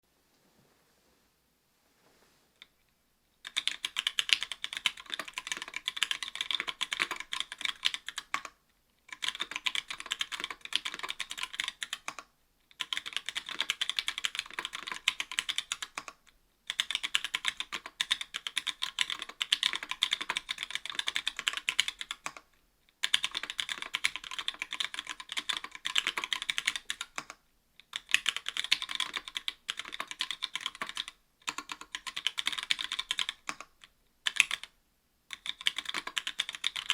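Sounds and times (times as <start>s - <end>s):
mechanical keyboard typing: 3.4s - 22.4s, 23.0s - 34.7s, 35.3s - 36.9s.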